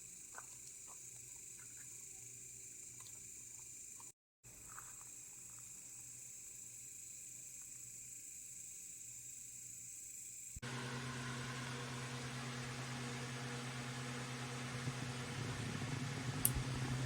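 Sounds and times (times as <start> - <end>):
insects chirping: 0.0 - 10.6.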